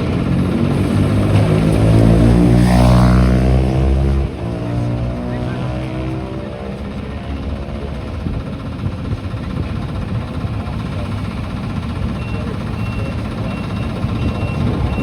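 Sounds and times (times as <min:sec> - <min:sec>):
heavy diesel engine rumbling: 0:00.0 - 0:15.0
reversing alarm beeping: 0:11.9 - 0:15.0.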